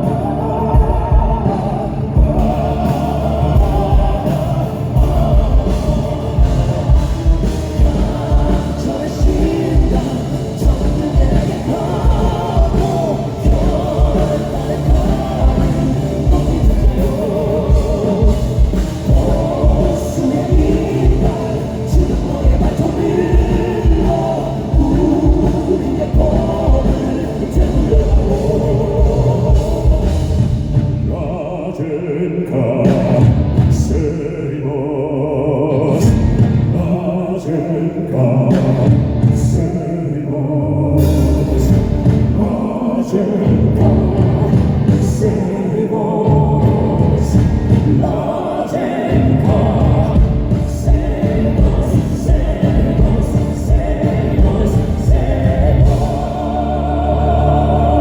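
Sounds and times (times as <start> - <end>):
heavy kick drum beat: 0.0 - 31.2, 46.3 - 56.8
live rock band: 0.0 - 34.6, 35.7 - 40.0, 40.8 - 58.0
men singing loudly: 0.0 - 58.0.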